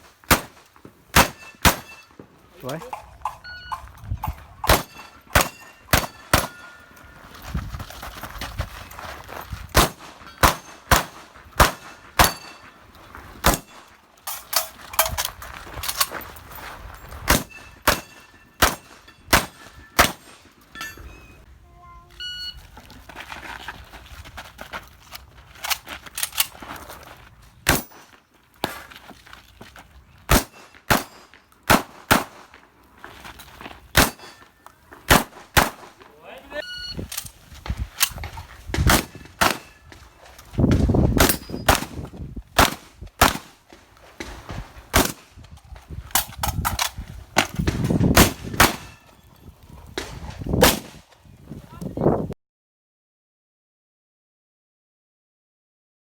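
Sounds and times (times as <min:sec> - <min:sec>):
shotgun shots: 0:00.2 - 0:02.1, 0:04.6 - 0:06.7, 0:09.7 - 0:12.6, 0:13.4 - 0:13.8, 0:17.3 - 0:20.4, 0:30.3 - 0:32.6, 0:34.0 - 0:34.4, 0:35.1 - 0:36.0, 0:38.8 - 0:39.8, 0:40.8 - 0:43.6, 0:44.2 - 0:45.3, 0:47.4 - 0:49.0, 0:50.0 - 0:51.1
steel targets ringing: 0:01.2 - 0:02.2, 0:02.8 - 0:07.1, 0:11.8 - 0:12.9, 0:17.4 - 0:21.5, 0:34.1 - 0:34.6.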